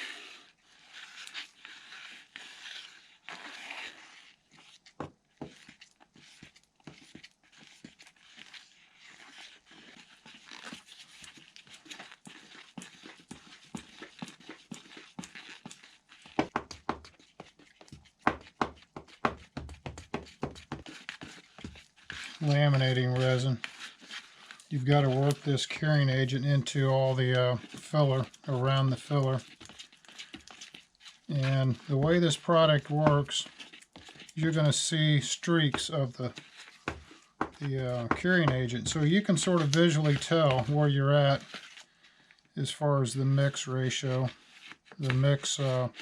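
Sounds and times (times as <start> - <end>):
metal rod scraping resin in jug: 0.0 - 6.4, 7.4 - 16.0, 20.2 - 41.9.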